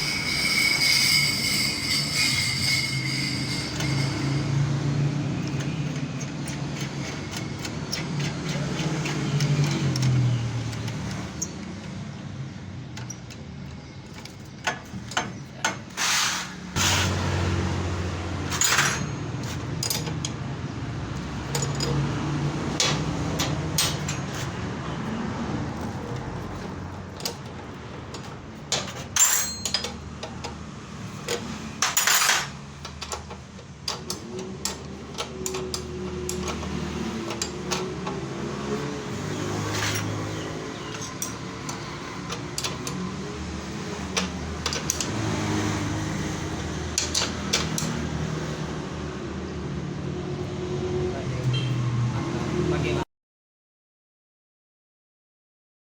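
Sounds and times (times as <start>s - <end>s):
metal tools clanking: 18.4s - 24.6s, 25.8s - 38.4s, 39.1s - 43.2s.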